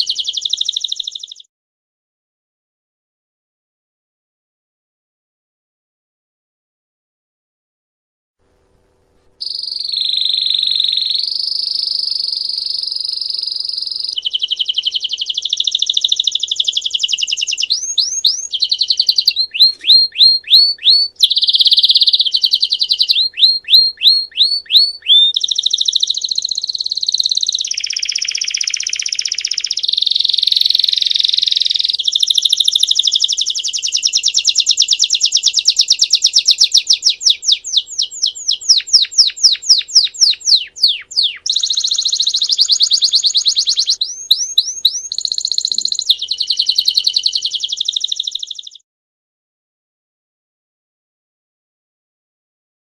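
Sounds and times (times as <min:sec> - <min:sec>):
canary singing trills: 0:00.0 - 0:01.5, 0:09.4 - 0:48.8.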